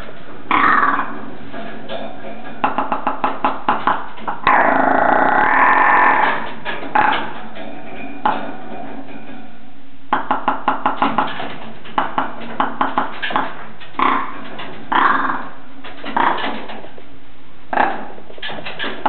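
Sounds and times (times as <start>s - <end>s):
ptarmigan rasping croaks: 0.0s - 8.6s, 12.6s - 16.9s, 17.7s - 19.0s
ptarmigan clicking calls: 0.5s - 1.1s.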